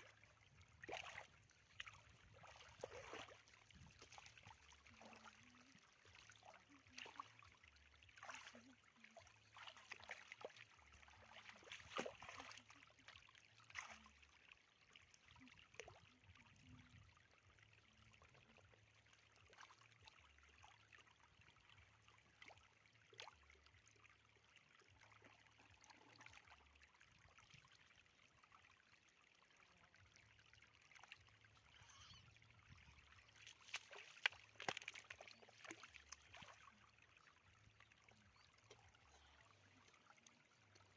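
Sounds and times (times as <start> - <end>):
shallow water splashing: 0.0 - 14.3, 31.0 - 40.9.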